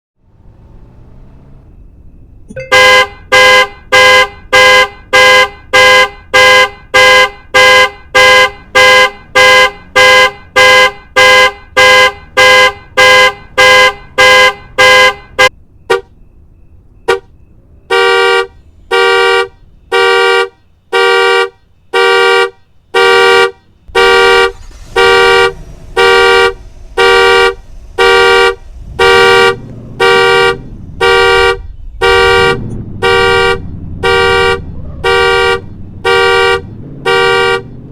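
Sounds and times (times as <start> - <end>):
car alarm honking: 0.3 - 37.9
low rumble: 25.5 - 37.9.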